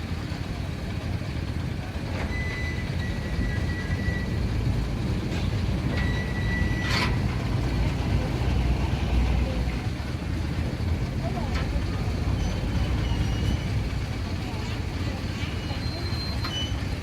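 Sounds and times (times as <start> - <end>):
heavy vehicle engines rumbling: 0.0 - 17.0
high electronic beep: 2.3 - 4.5, 5.9 - 7.2.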